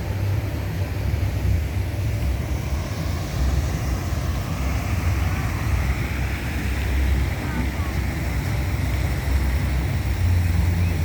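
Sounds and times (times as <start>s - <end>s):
low rumble of passing traffic: 0.0s - 11.0s
wind buffeting microphone: 0.0s - 11.0s.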